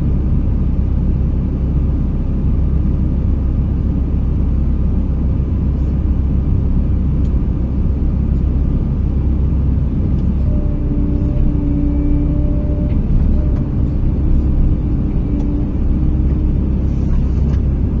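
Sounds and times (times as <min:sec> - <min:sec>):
crane engine rumble: 0:00.0 - 0:18.0
steady whine: 0:03.7 - 0:18.0.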